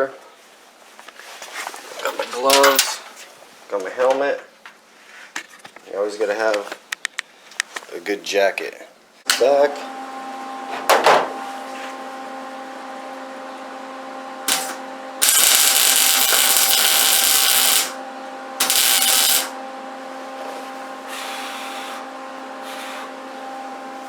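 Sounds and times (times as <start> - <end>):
steady hum: 9.0 - 24.0
welding arc crackling: 14.4 - 18.0, 18.6 - 19.6.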